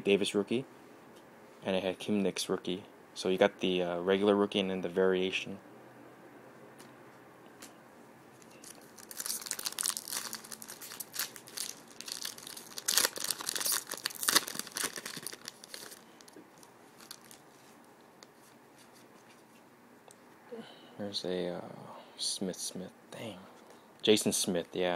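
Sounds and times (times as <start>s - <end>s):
wrapper tearing and crinkling: 8.4s - 17.6s.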